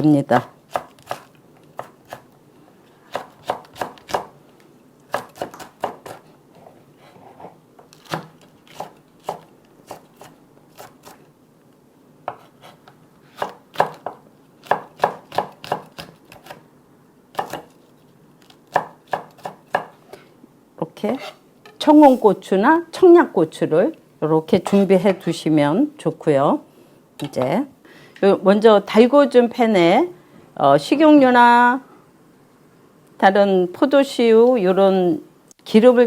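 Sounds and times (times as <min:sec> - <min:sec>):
knife chopping on cutting board: 0:13.4 - 0:16.6, 0:17.4 - 0:17.7, 0:18.8 - 0:19.9.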